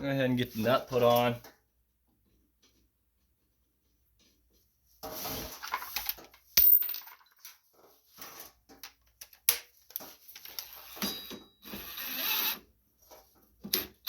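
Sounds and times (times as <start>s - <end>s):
knocks and scrapes: 2.2s - 6.3s.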